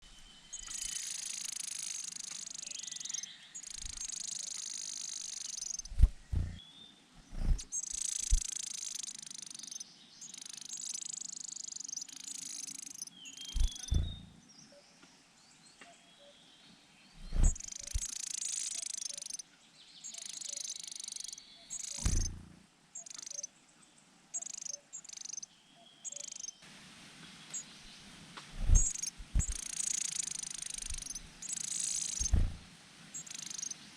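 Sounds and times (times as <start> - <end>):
nestlings begging calls: 0.6 - 6.6, 7.2 - 14.0, 17.3 - 19.4, 20.0 - 22.4, 28.6 - 33.8
low thumps: 5.9 - 6.6, 7.2 - 7.7, 13.6 - 14.4, 17.2 - 18.1, 22.0 - 22.6, 28.5 - 29.6, 32.2 - 32.7.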